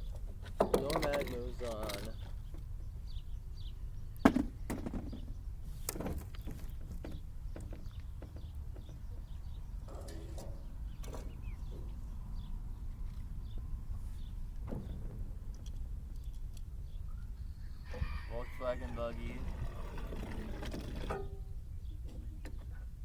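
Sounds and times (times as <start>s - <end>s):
toy cars clicking and knocking: 0.6s - 2.3s.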